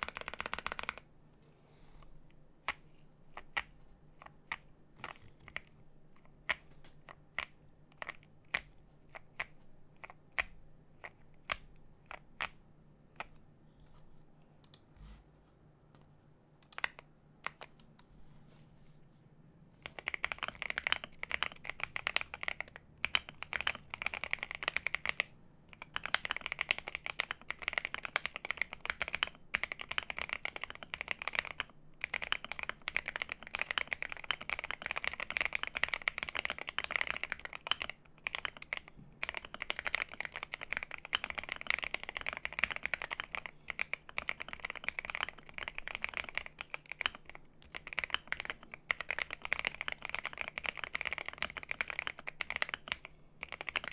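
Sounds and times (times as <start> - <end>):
fast typing on mechanical keyboard: 0.0 - 1.1, 19.8 - 53.9.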